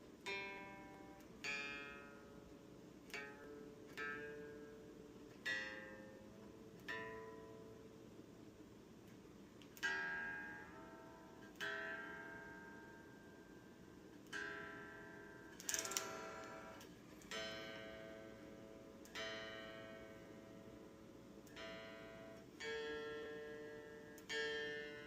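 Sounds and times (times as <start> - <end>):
electric guitar chords strummed: 0.2 - 7.9, 9.6 - 25.0.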